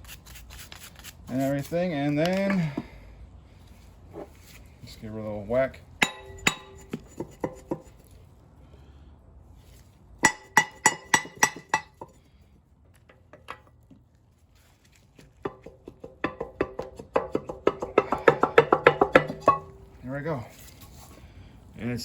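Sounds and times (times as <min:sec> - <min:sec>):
hammer striking metal: 0:06.0 - 0:07.9, 0:10.2 - 0:12.0, 0:16.2 - 0:19.9.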